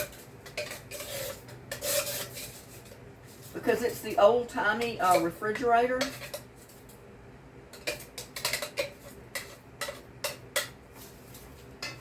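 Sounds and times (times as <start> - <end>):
kitchenware clicking and tapping: 0.0 - 3.0, 3.6 - 6.8, 7.7 - 10.8, 11.7 - 12.0.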